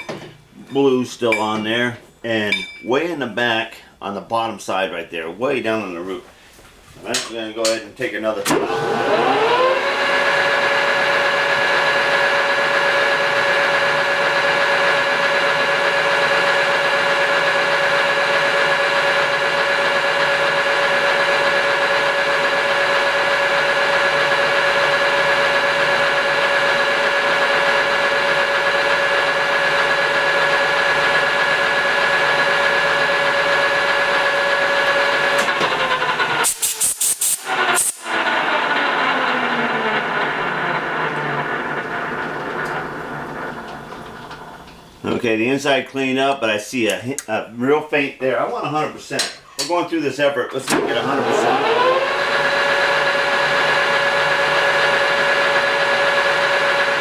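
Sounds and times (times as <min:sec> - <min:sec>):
metal lathe running with high whine: 0:08.5 - 0:36.6, 0:37.4 - 0:45.0, 0:50.7 - 0:57.0.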